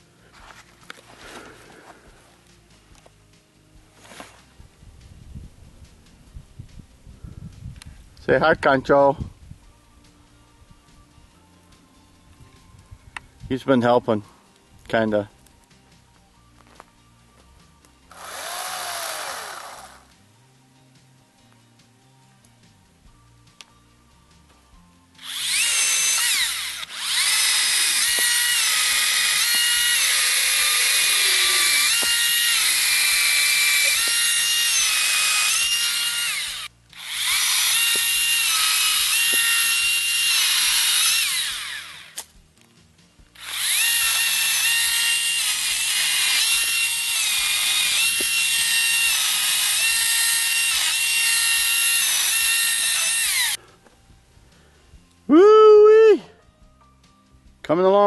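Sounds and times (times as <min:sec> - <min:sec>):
cordless chainsaw cutting wood: 0:18.1 - 0:20.1, 0:25.2 - 0:42.3, 0:43.4 - 0:53.6.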